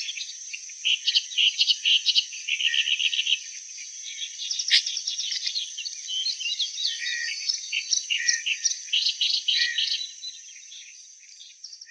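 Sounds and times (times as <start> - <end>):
warbler singing: 0.0 - 11.9.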